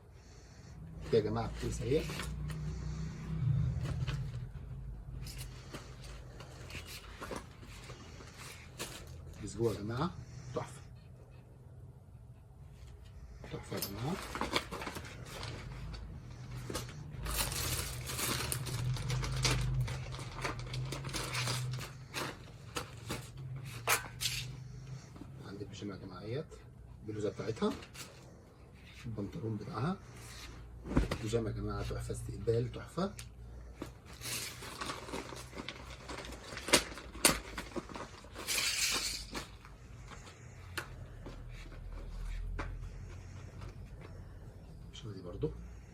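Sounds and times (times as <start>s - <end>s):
garments rustling and crinkling: 12.9s - 24.5s.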